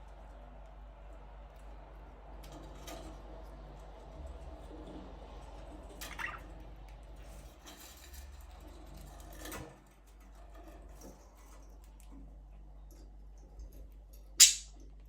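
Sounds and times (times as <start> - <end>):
small clicks and rustles: 0.0 - 15.0
budgerigar chirping: 14.4 - 14.7.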